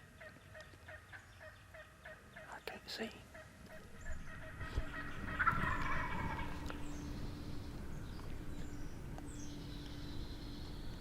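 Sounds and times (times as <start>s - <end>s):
small birds chirping: 0.0s - 11.0s
turkey gobbling: 0.2s - 2.5s, 3.3s - 7.2s.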